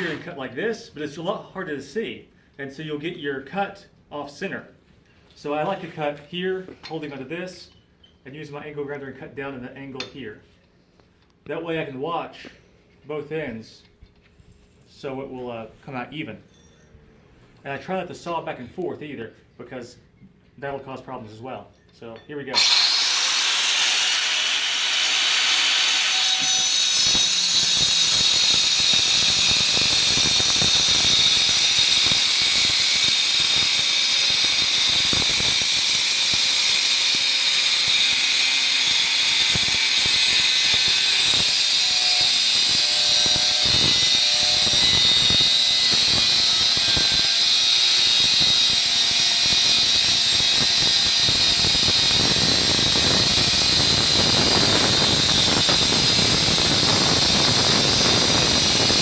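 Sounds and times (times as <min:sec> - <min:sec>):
angle grinder cutting steel pipe: 0:00.0 - 0:00.3, 0:22.5 - 0:59.0.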